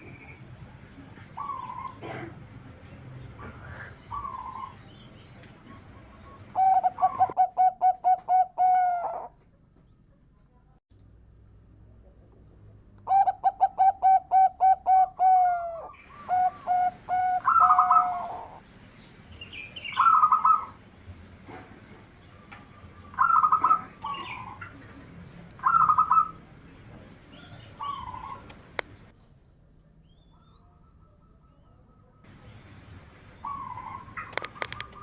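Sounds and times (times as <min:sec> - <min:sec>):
dove cooing: 0:01.2 - 0:02.4, 0:03.4 - 0:04.8, 0:05.6 - 0:09.4, 0:13.0 - 0:18.6, 0:19.9 - 0:20.8, 0:22.8 - 0:24.8, 0:25.6 - 0:26.5, 0:27.3 - 0:28.7, 0:33.4 - 0:35.0.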